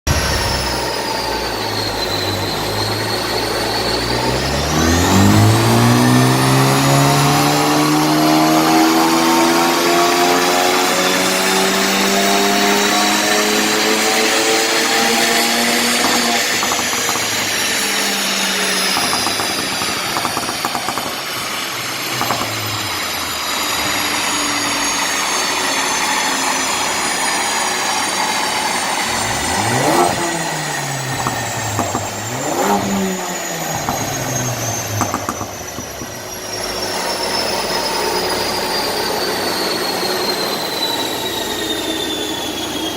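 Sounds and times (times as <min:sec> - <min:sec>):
car engine accelerating: 0:00.0 - 0:42.9
high whine falling in pitch: 0:00.1 - 0:42.9
exhaust crackles: 0:29.0 - 0:36.3.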